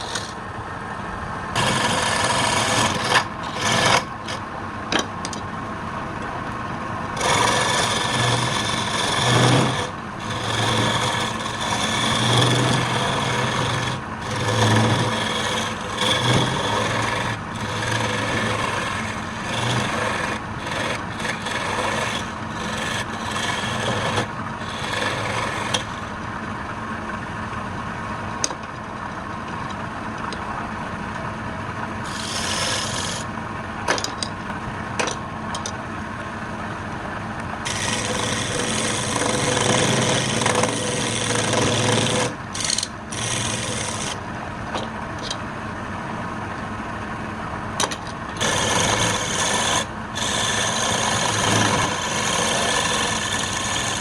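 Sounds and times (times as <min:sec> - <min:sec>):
tool scraping spinning wood: 0:00.0 - 0:00.5, 0:01.5 - 0:05.4, 0:07.1 - 0:26.4, 0:32.0 - 0:35.8, 0:37.6 - 0:45.4, 0:47.8 - 0:54.0
lathe running hum: 0:00.0 - 0:33.9, 0:34.5 - 0:54.0.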